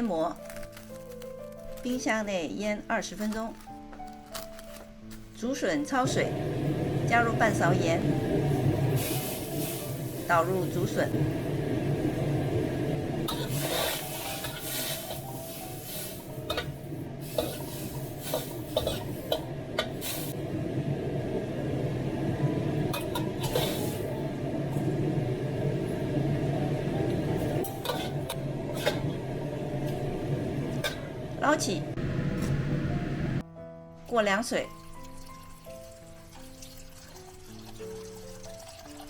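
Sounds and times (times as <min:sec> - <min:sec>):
pot rushing on heat: 0:06.0 - 0:33.4
utensil scraping a pot: 0:13.3 - 0:15.8, 0:27.8 - 0:29.2.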